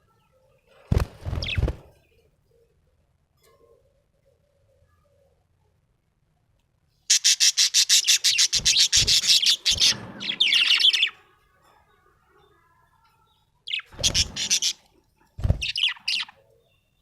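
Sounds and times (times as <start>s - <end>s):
budgerigar chirping: 7.1s - 11.2s.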